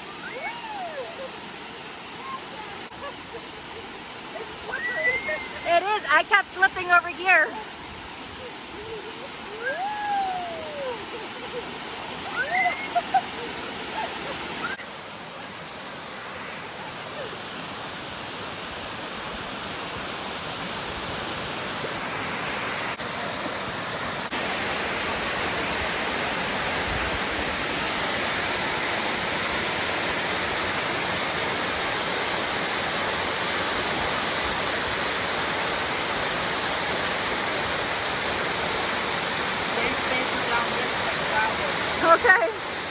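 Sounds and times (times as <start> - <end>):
waterfall rushing: 0.0 - 42.9.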